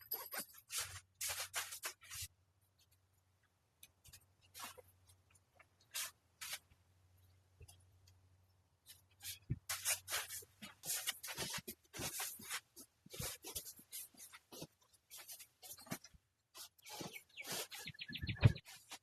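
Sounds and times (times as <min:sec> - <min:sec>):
tent fabric rustling and scraping: 0:00.1 - 0:02.3, 0:05.9 - 0:06.7, 0:08.9 - 0:18.0, 0:18.6 - 0:19.0.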